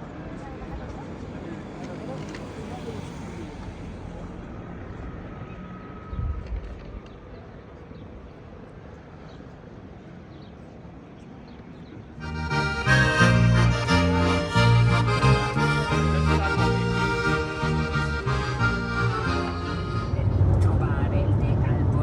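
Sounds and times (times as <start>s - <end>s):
accordion folk music: 12.2s - 20.7s.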